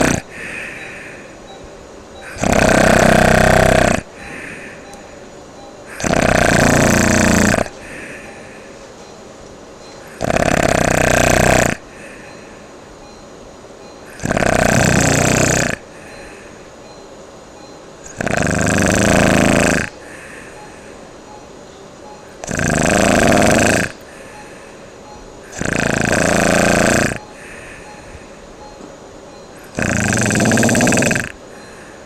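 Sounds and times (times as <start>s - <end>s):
person snoring loudly: 0.0s - 0.7s, 2.2s - 4.1s, 5.9s - 8.0s, 10.1s - 11.9s, 14.1s - 15.9s, 18.1s - 20.0s, 22.4s - 24.0s, 25.5s - 27.5s, 29.6s - 31.4s.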